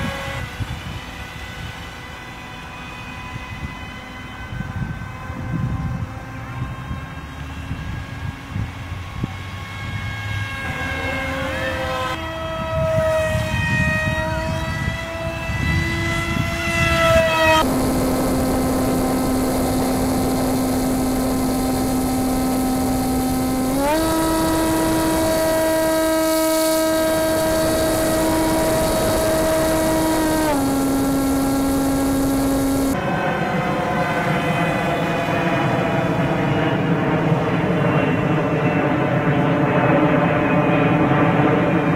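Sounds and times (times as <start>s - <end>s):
model jet motor whine: 0.0s - 6.0s, 7.0s - 36.8s
windy hiss: 17.6s - 33.0s.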